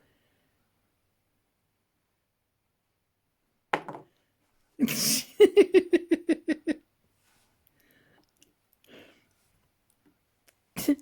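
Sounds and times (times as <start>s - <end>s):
person laughing: 4.8s - 6.8s, 10.8s - 11.0s.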